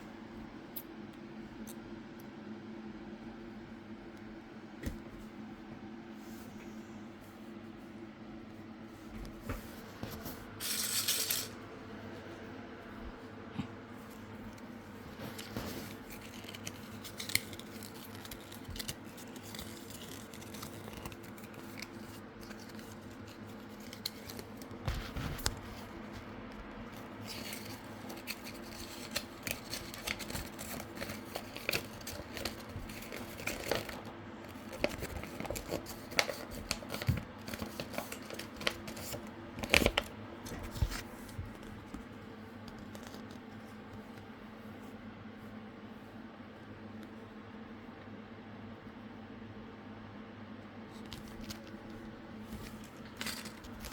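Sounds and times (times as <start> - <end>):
steady low hum: 0.0 - 53.9
packaging crinkling and tearing: 15.2 - 26.0, 26.8 - 41.8, 52.6 - 53.9.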